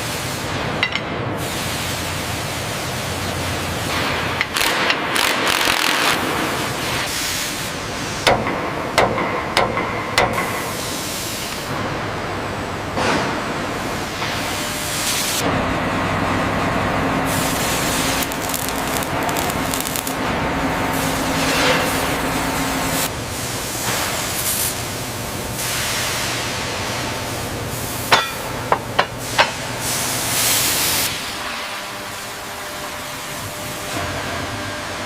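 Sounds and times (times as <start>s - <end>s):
machine hum: 11.7s - 23.5s
steady hiss: 17.3s - 27.0s
sharp metallic knocks: 28.1s - 29.1s.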